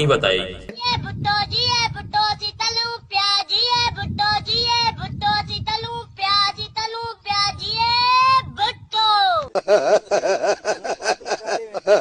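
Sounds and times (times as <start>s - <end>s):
high-pitched voice singing: 0.6s - 9.5s.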